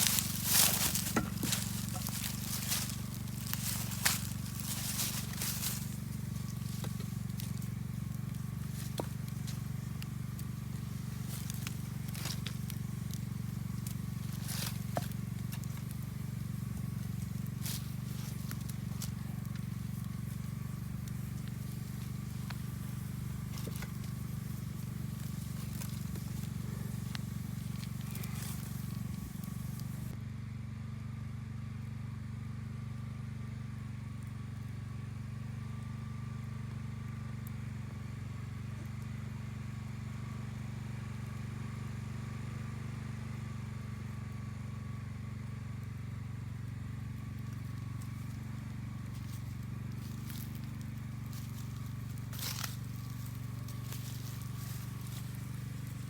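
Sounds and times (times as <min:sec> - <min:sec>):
campfire crackling and popping: 0:00.0 - 0:30.2, 0:45.4 - 0:56.0
low rumble: 0:00.0 - 0:30.2.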